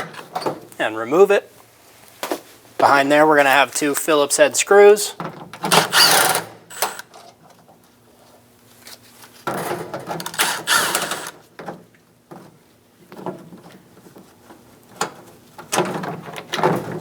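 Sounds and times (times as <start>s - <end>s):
power driver whirring: 5.7s - 7.1s, 10.3s - 11.4s.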